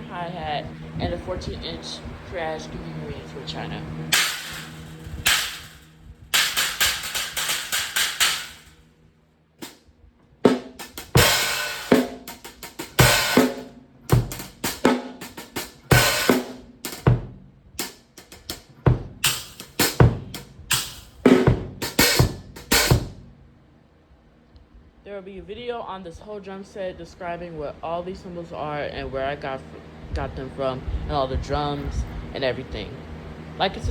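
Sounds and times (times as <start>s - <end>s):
trashy cymbal stack strikes: 3.8s - 8.8s, 10.5s - 23.3s
drum kit groove: 4.0s - 8.8s, 10.4s - 23.3s.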